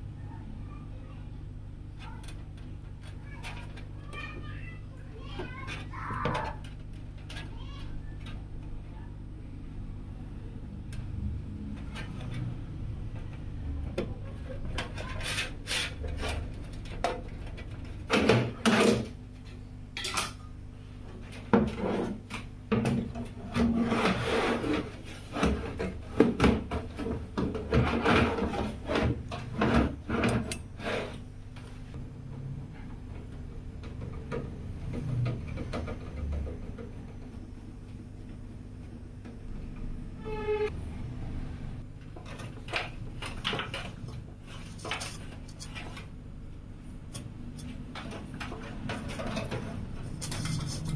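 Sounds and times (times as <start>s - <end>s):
clicks knocks and scraping rubs: 1.9s - 4.5s, 5.2s - 8.8s, 13.2s - 20.2s, 21.1s - 31.8s, 42.1s - 46.2s, 47.1s - 50.9s.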